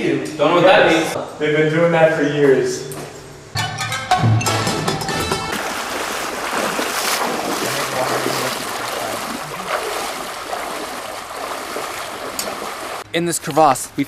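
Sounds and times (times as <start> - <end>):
creek water rushing: 5.5 - 13.0.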